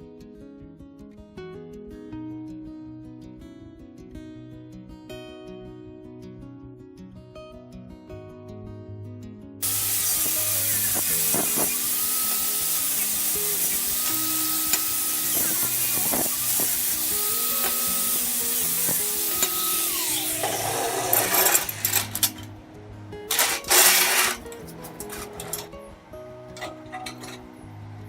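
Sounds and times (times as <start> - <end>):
background music: 4.3 - 28.0
steady hiss: 9.6 - 22.5, 23.3 - 27.4
clinks and knocks: 23.3 - 25.7, 26.6 - 27.4.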